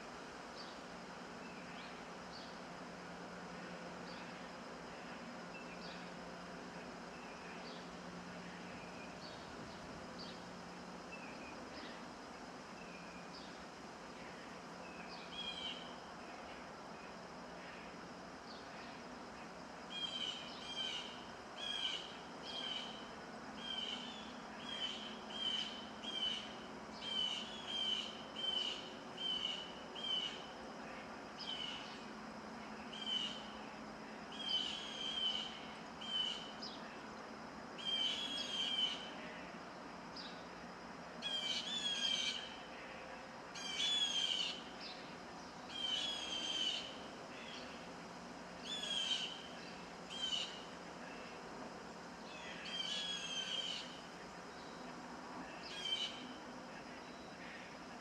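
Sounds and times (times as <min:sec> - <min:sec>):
faint wind hiss: 0:00.0 - 0:58.0
songbird calling: 0:00.5 - 0:02.7, 0:04.0 - 0:37.1, 0:37.8 - 0:40.5, 0:41.2 - 0:47.8, 0:48.6 - 0:51.4, 0:52.2 - 0:57.8.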